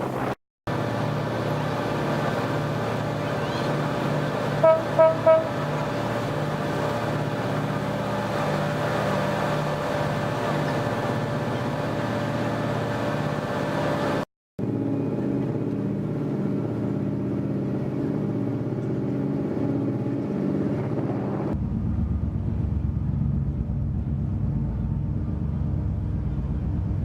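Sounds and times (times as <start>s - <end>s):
engine running: 0.0s - 27.0s.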